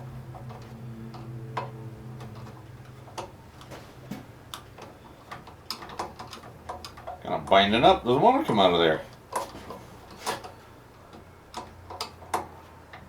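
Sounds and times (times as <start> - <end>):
low hum: 0.0 - 3.6.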